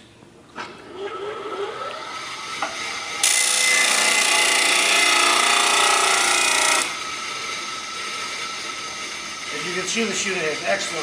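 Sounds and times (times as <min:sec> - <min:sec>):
disc sander motor whine: 0:01.1 - 0:03.3
steel grinding against sanding disc: 0:08.0 - 0:11.0.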